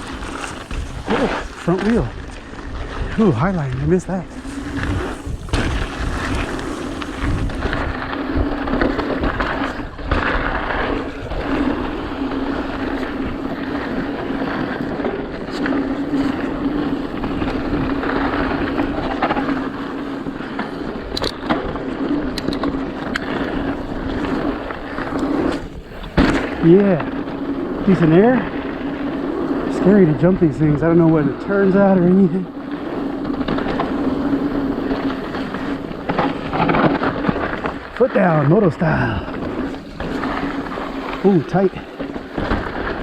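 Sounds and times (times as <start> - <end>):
bike tyres crunching on gravel: 0.0 - 43.0
wind on microphone: 0.0 - 43.0
bike knocking over bumps: 4.3 - 14.3, 15.6 - 29.8, 32.6 - 38.0, 38.6 - 43.0.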